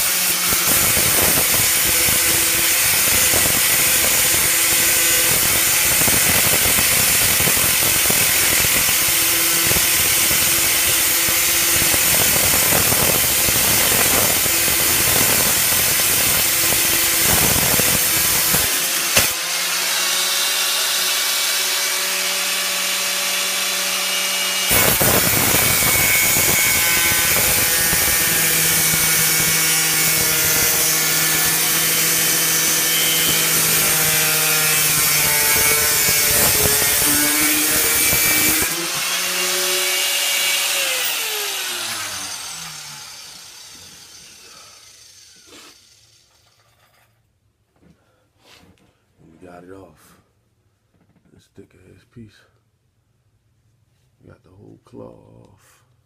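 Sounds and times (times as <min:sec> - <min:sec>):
grinder disc whining freely: 0:00.0 - 0:19.4, 0:24.7 - 0:46.2
angle grinder cutting steel: 0:00.0 - 0:46.7.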